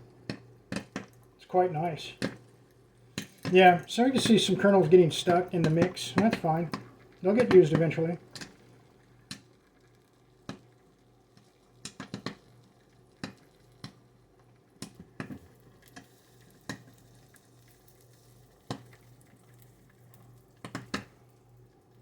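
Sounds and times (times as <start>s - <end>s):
popcorn popping: 0.1s - 14.1s, 14.8s - 21.4s
stirring motor humming: 1.6s - 8.6s.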